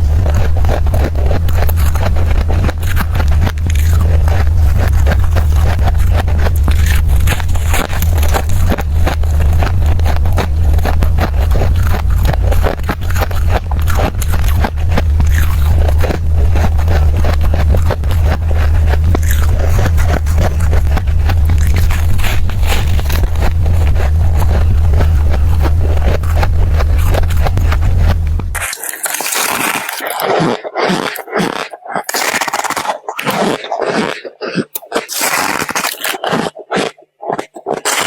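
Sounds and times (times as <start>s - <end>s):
steady low hum: 0.0s - 36.3s
biting and chewing ice: 0.0s - 38.0s.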